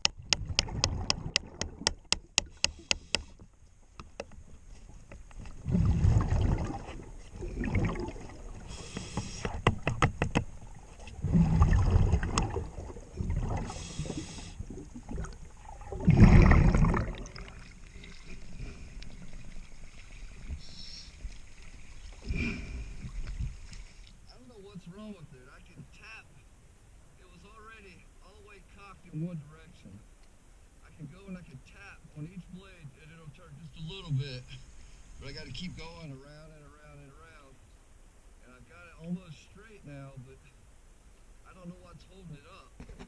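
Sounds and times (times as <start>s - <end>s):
regulator hiss on inhale: 2.4s - 3.5s, 8.6s - 9.7s, 13.6s - 14.7s, 20.6s - 21.2s, 22.1s - 24.2s, 34.5s - 35.2s
bubbling rush on exhale: 5.6s - 9.6s, 10.6s - 21.2s.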